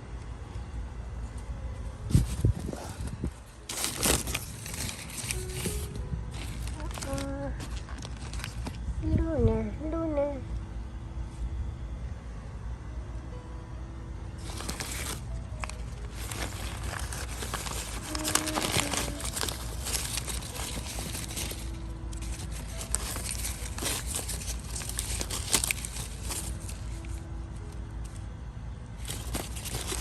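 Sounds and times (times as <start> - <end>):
packing material crinkling: 2.1 - 8.9, 14.4 - 28.2, 29.0 - 30.0.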